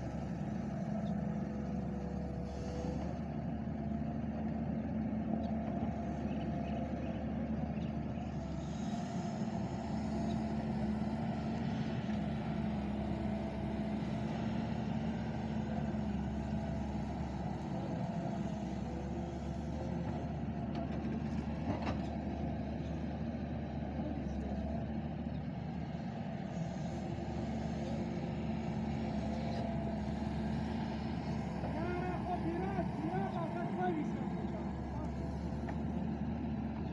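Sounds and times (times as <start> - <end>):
excavator diesel engine running: 0.0 - 36.9
excavator digging mud: 0.0 - 36.9.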